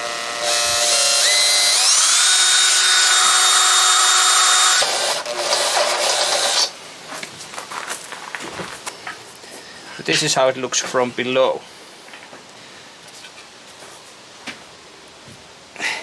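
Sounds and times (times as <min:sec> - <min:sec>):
electric drill boring into metal: 0:00.0 - 0:06.8.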